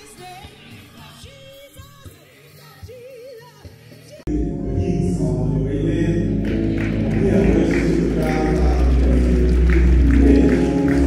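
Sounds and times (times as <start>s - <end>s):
music with heavy bass: 4.3s - 11.0s
person singing: 4.3s - 11.0s.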